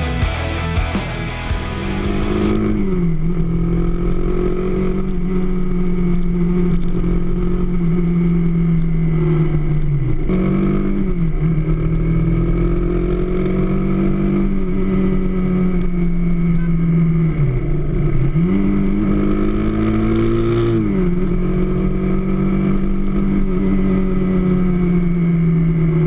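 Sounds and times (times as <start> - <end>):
motorcycle engine running: 0.0 - 2.6.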